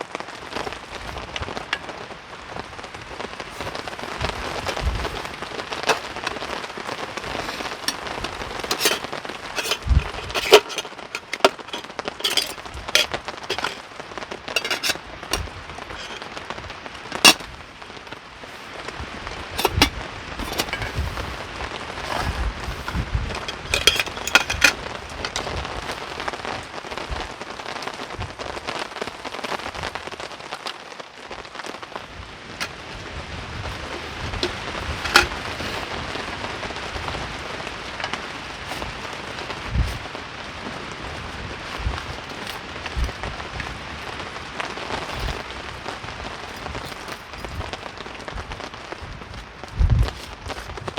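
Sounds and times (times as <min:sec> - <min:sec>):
rain drops hitting close by: 0:00.0 - 0:50.9
low wind rumble: 0:00.5 - 0:30.1, 0:32.0 - 0:50.9
heavy rain: 0:24.8 - 0:50.9.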